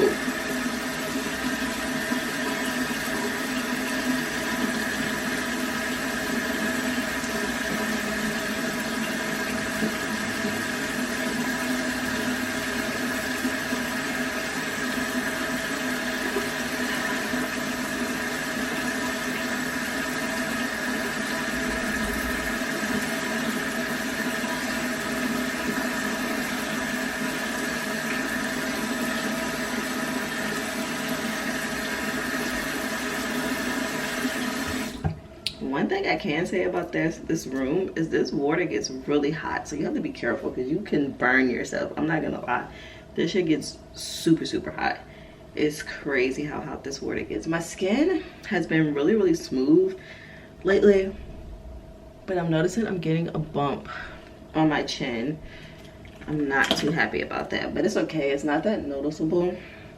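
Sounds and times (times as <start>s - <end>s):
faucet running into sink: 0.0s - 35.2s, 55.5s - 57.5s
faint hum in pipes: 0.0s - 59.9s.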